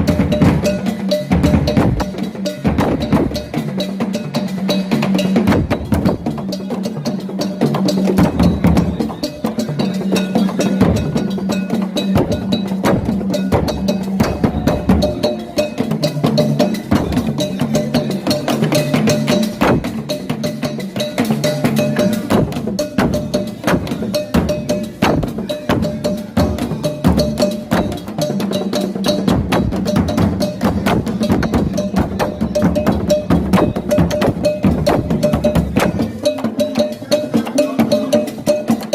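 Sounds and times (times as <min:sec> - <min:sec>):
drums in fast rhythm: 0:00.0 - 0:38.9
deep booming drum: 0:12.2 - 0:15.3, 0:25.0 - 0:28.0, 0:29.2 - 0:36.0.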